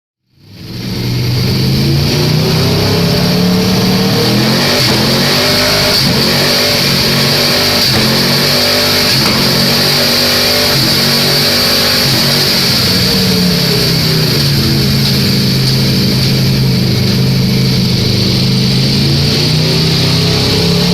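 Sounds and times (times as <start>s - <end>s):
motorcycle engine revving through upshifts: 0.4s - 20.9s
sharp exhaust pops: 3.8s - 19.9s.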